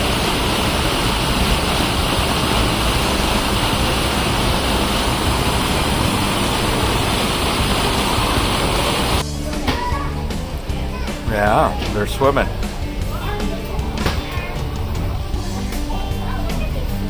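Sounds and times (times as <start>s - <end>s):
rush of falling water: 0.0s - 9.2s.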